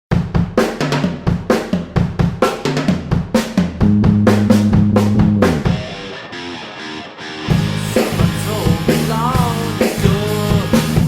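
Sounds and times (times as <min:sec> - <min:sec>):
drum kit kick and snare hits: 0:00.1 - 0:06.0, 0:07.5 - 0:11.0
low held bass notes: 0:03.8 - 0:05.9, 0:07.5 - 0:11.0.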